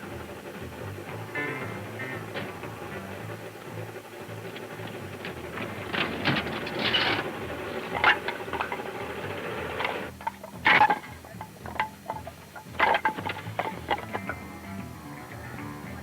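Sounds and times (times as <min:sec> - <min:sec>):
steady mechanical running: 0:00.0 - 0:16.0
metallic clicks and knocks: 0:02.2 - 0:14.6.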